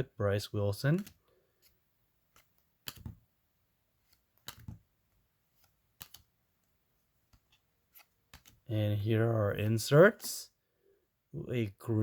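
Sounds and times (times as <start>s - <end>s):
trading cards flicked by hand: 0.9s - 3.2s, 4.0s - 4.9s, 5.6s - 6.4s, 7.3s - 8.7s.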